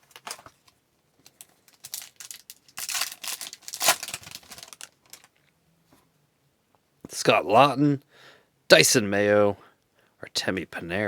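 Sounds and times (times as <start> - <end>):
foil wrapper crinkling and tearing: 1.3 - 5.3.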